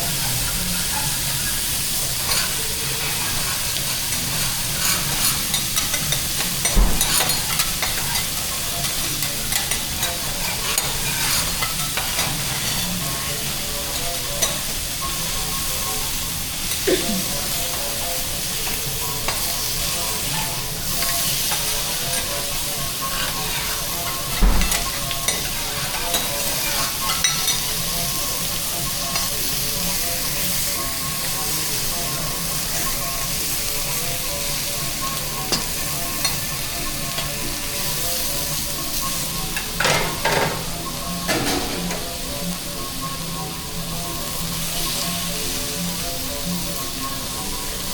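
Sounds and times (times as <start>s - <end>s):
food sizzling on a griddle: 0.0s - 47.9s
metal spatulas scraping: 2.2s - 8.4s, 9.6s - 13.1s.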